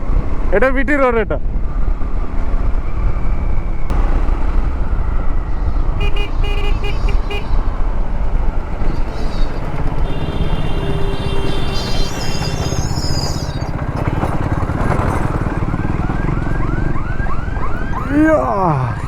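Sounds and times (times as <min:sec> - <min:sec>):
motorcycle engine and road noise: 0:01.4 - 0:19.0
vehicle horns honking: 0:06.0 - 0:07.6, 0:10.0 - 0:14.5.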